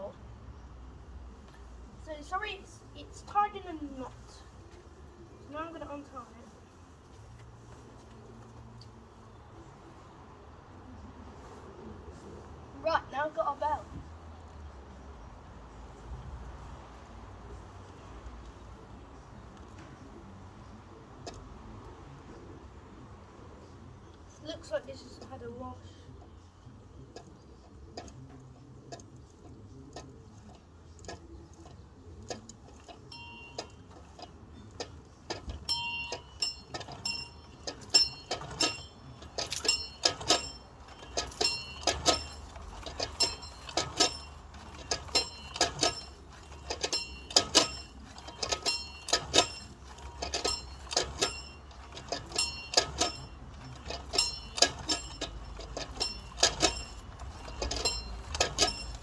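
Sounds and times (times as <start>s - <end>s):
bell clapper clinking: 35.6s - 59.0s.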